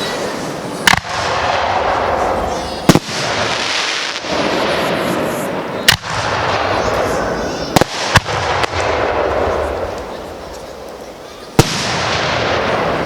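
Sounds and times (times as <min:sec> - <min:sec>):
steady hissing: 0:00.0 - 0:12.0
firework shells bursting: 0:00.8 - 0:10.1.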